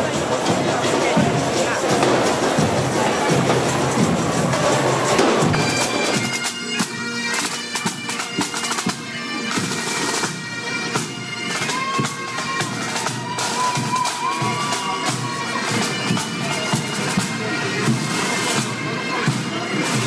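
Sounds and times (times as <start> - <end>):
drum strikes: 0.0 - 6.9
bagpipes playing: 0.0 - 20.0.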